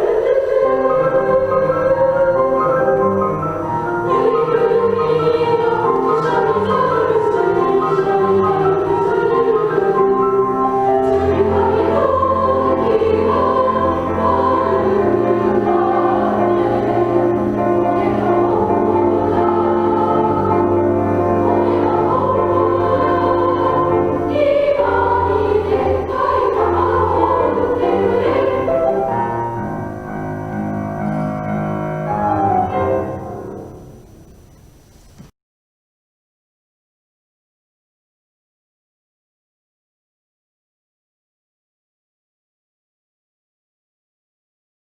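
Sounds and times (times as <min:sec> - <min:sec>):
children's choir singing: 0:00.0 - 0:34.0.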